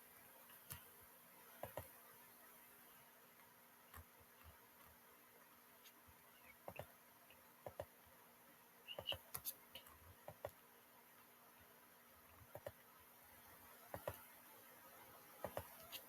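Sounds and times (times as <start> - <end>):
faint clicks: 0.4 - 1.0, 1.6 - 2.0, 3.3 - 5.0, 13.8 - 14.4, 15.4 - 16.0.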